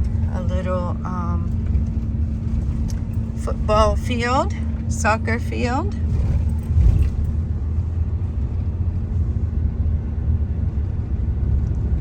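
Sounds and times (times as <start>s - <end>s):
road noise: 0.0s - 12.0s
truck engine rumble: 0.0s - 12.0s.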